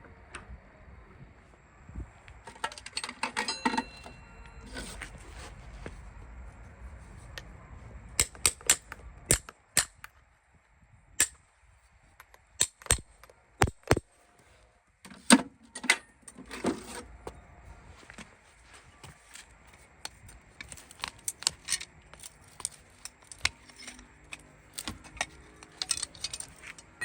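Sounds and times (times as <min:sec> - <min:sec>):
rough scraping on hoof: 0:04.6 - 0:06.2.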